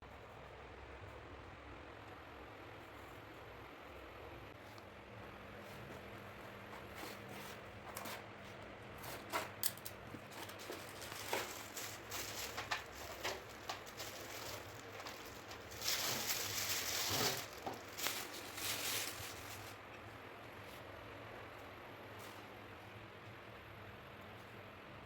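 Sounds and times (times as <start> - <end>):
packaging crinkling: 9.6 - 19.8.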